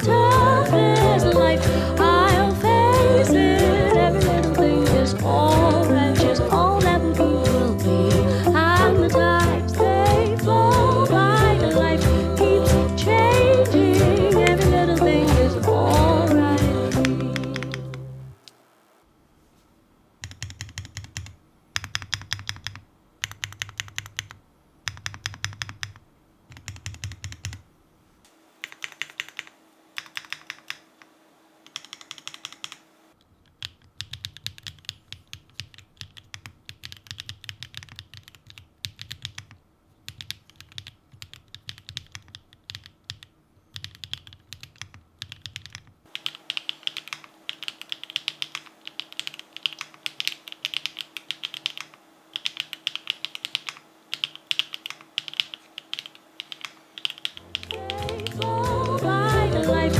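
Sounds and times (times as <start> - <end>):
mechanical keyboard keys clacking: 20.2 - 27.6, 28.6 - 31.1, 31.7 - 32.8, 33.4 - 58.5.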